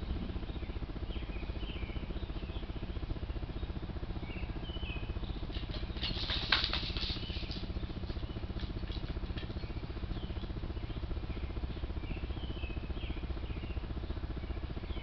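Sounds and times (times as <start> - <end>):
motorcycle engine idling: 0.0 - 15.0
scrabbling and rattling: 5.5 - 10.5.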